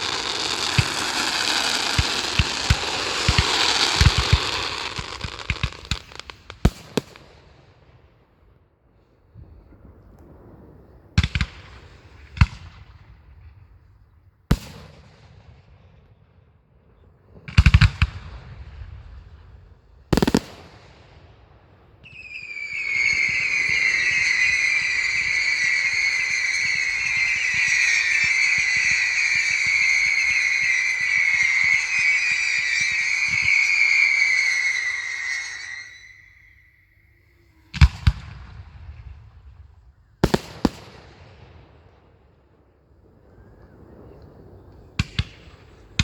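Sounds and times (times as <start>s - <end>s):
shrill firework whistling: 0.0s - 7.1s, 21.8s - 41.2s
firework bangs: 0.0s - 8.3s, 9.3s - 16.3s, 16.9s - 46.0s.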